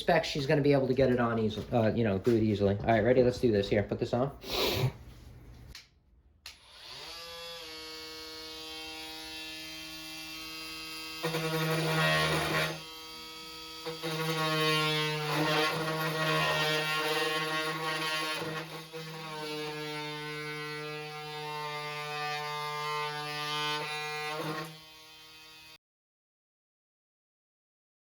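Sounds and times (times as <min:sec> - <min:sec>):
oscillating multitool buzzing: 0:06.5 - 0:14.6
blade cutting wood: 0:06.5 - 0:25.8.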